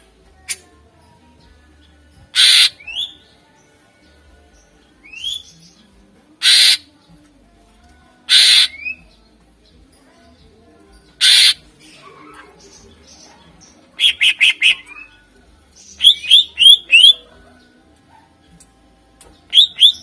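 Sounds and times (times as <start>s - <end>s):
bird harsh rasping calls: 2.3s - 3.2s, 6.4s - 6.9s, 8.3s - 9.0s, 11.2s - 15.2s, 15.8s - 17.3s, 19.5s - 20.0s.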